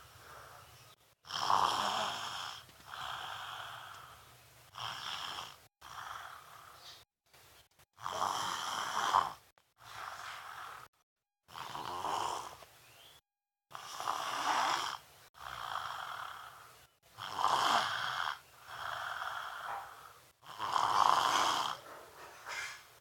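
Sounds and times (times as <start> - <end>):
child snoring: 1.2 - 6.8, 8.0 - 12.6, 13.7 - 21.8.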